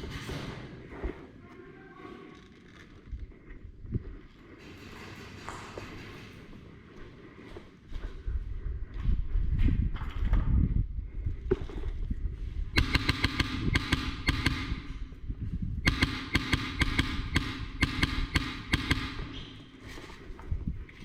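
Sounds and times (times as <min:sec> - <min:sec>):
airsoft gun firing full auto: 0:12.8 - 0:14.8, 0:15.8 - 0:19.2.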